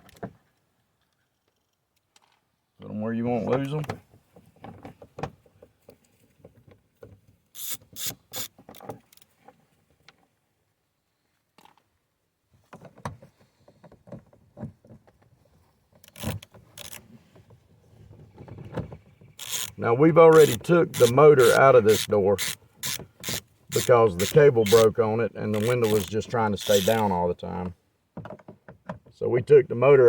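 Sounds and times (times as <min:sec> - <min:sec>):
hand tools and bolts clicking: 0:16.0 - 0:17.0, 0:19.4 - 0:27.2.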